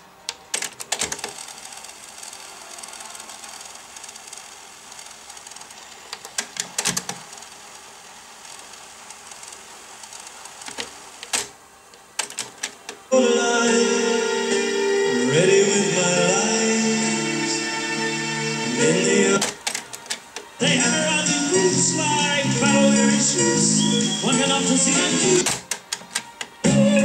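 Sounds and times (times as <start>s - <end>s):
faint tape hiss: 0.0s - 27.0s
cassette deck mechanism clicking: 12.2s - 13.0s, 19.4s - 20.5s, 25.4s - 26.6s.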